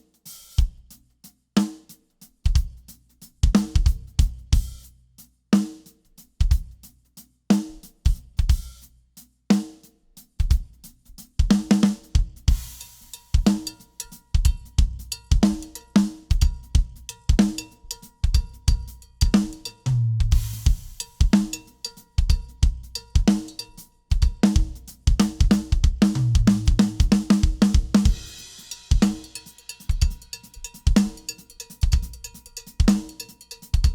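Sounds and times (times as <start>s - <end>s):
drum kit groove: 0.0s - 33.9s
low tom fills: 18.7s - 21.4s, 24.4s - 29.1s.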